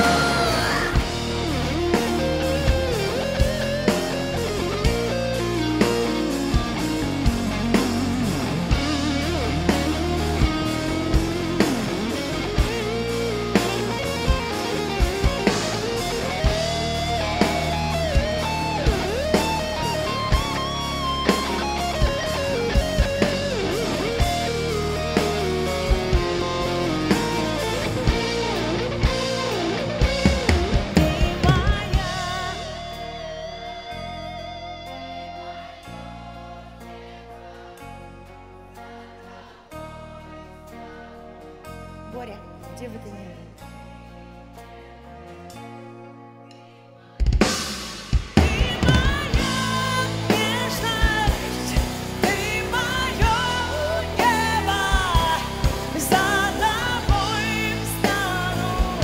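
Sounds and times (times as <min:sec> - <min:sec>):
woman singing: 0:00.0 - 0:01.1, 0:30.9 - 0:33.2, 0:48.4 - 0:59.0
lead guitar with bent notes: 0:00.0 - 0:36.4
drums: 0:00.0 - 0:59.0
pop-rock band playing: 0:00.0 - 0:59.0.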